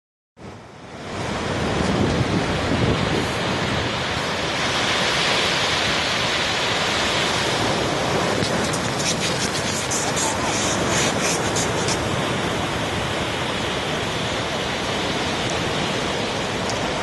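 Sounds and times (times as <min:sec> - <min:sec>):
surf breaking on beach: 0:01.0 - 0:17.0.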